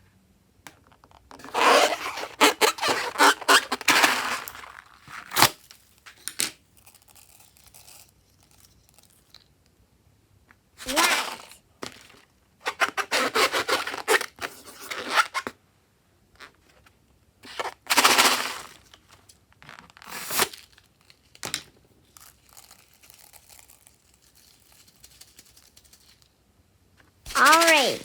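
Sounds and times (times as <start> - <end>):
slime crackling and tearing: 22.1 - 25.1.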